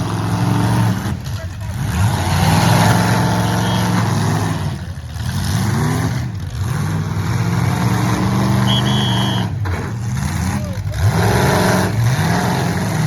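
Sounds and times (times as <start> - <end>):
car engines revving: 0.0 - 13.0
short high beep: 8.6 - 9.5.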